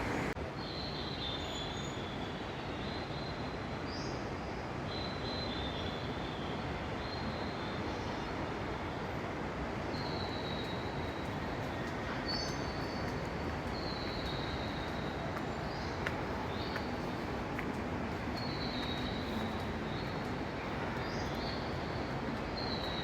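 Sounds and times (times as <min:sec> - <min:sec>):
steady rushing noise: 0:00.0 - 0:00.4.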